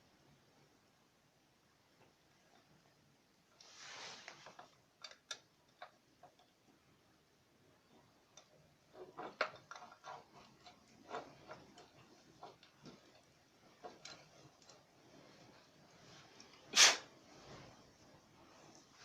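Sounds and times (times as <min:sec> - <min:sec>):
tools clicking and knocking: 0:04.5 - 0:06.6, 0:08.3 - 0:14.8.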